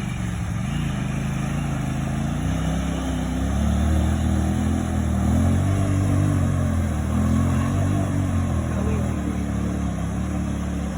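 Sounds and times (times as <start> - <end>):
off-road vehicle engine revving: 0.0 - 10.9.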